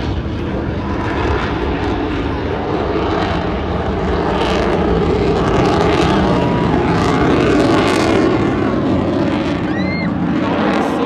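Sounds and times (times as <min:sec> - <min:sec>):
jet roar: 0:00.0 - 0:11.0.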